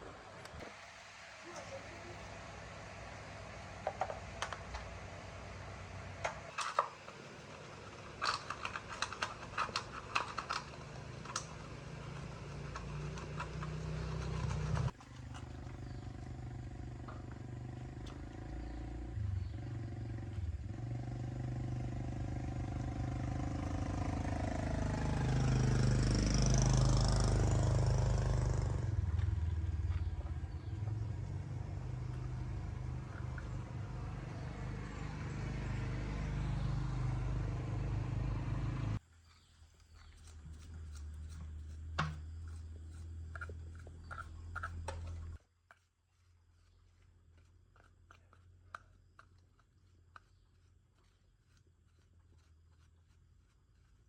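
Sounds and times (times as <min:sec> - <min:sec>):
small motorbike engine running: 0:03.8 - 0:39.0.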